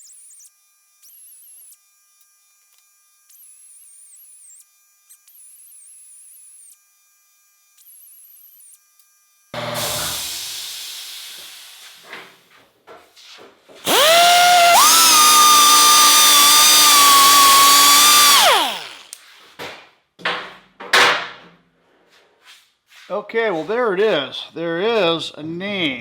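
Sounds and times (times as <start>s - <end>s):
electric grinder motor whine: 0.0s - 11.5s, 13.8s - 19.2s.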